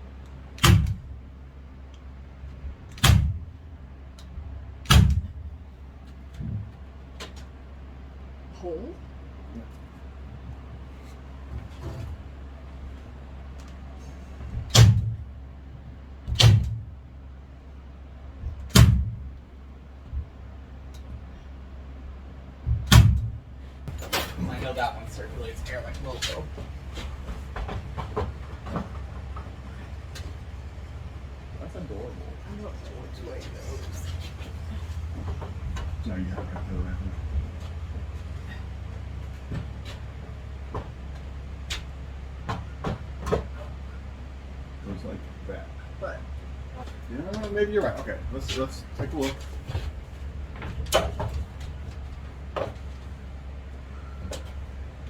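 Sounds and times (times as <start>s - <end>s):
steady low hum: 0.0s - 55.0s
nail gun firing into wood: 0.6s - 1.0s, 4.8s - 5.3s.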